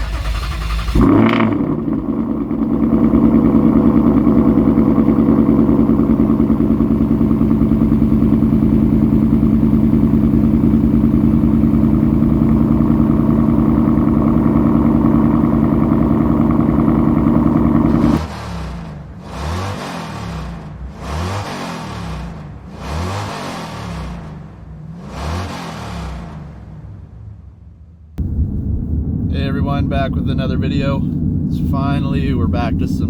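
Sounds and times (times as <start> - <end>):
car engine running: 0.0 - 33.0.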